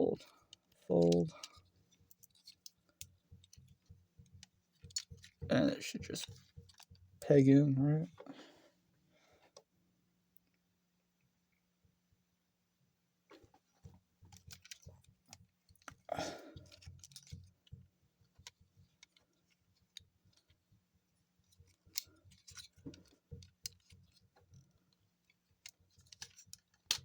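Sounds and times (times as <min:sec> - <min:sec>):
plastic toy parts clicking: 0:00.2 - 0:03.6, 0:04.4 - 0:05.4, 0:14.3 - 0:17.4, 0:21.7 - 0:24.6, 0:25.2 - 0:27.0
plastic clack: 0:00.2 - 0:07.0, 0:13.3 - 0:17.6, 0:21.7 - 0:24.7, 0:25.6 - 0:27.0.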